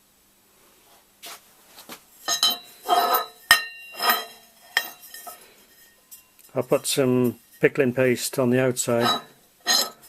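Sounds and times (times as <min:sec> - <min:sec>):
metal parts clinking: 0:02.3 - 0:05.4, 0:09.0 - 0:10.0.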